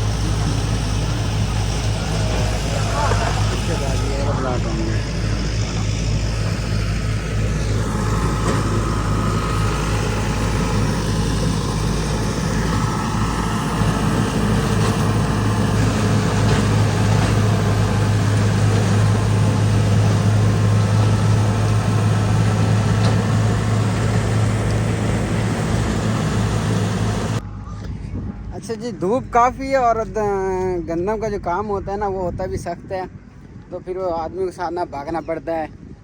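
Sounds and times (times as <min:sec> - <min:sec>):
straw chopping machine rushing: 0:00.0 - 0:27.4
tractor engine running under load: 0:00.0 - 0:27.5.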